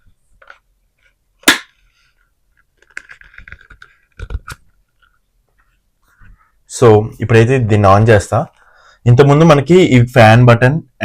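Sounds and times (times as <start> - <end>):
loud plastic snap: 1.4 - 1.8
plastic clicks and rattles: 2.6 - 5.1.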